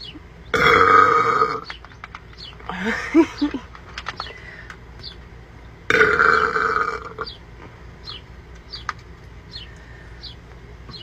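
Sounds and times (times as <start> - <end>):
woman burping: 0.5 - 1.6, 5.9 - 7.2.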